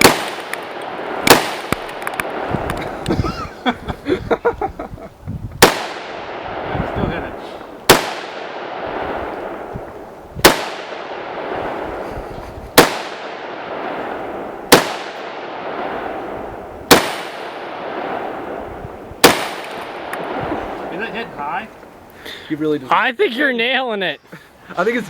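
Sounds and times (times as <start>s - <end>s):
rifle shots with echo: 0.0s - 3.0s, 5.6s - 9.8s, 10.4s - 12.1s, 12.7s - 21.3s.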